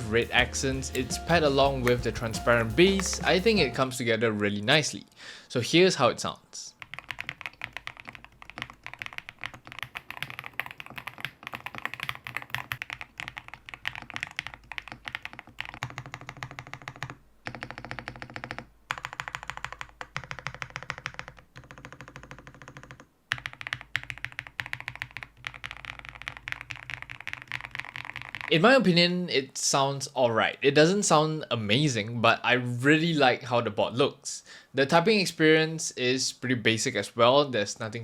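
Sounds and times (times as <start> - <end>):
fast typing on mechanical keyboard: 6.8 - 28.5.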